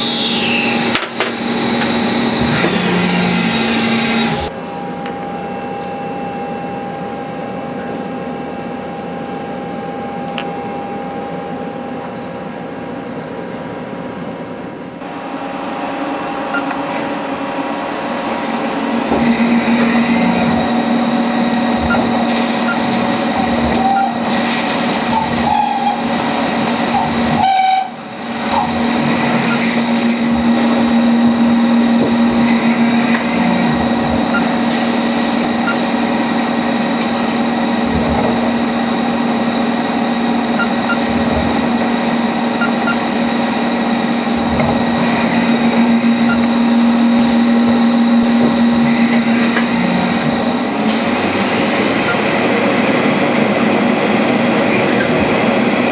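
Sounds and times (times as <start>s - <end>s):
constant machine whine: 0.0s - 55.9s
lathe machine hum: 0.0s - 55.9s
metal cutting noise: 18.6s - 53.4s.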